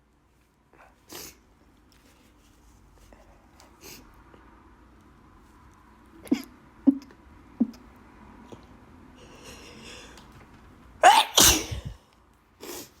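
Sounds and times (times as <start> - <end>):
person sneezing: 11.0 - 12.0.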